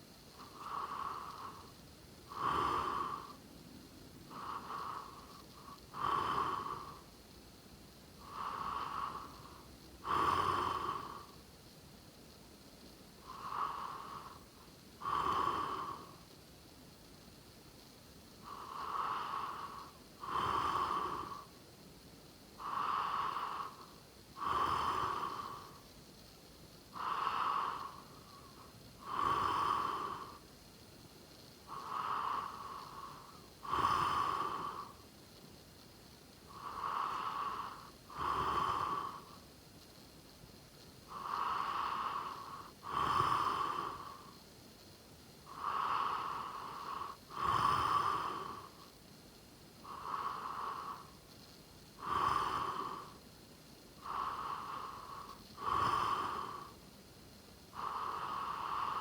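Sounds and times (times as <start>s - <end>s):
person snoring: 2.3s - 3.4s, 18.4s - 21.5s, 22.6s - 25.8s, 27.0s - 30.4s, 31.7s - 35.0s, 36.5s - 39.4s, 41.1s - 44.4s, 45.5s - 48.9s, 49.8s - 51.2s, 52.0s - 53.2s, 54.0s - 56.8s, 57.7s - 59.0s.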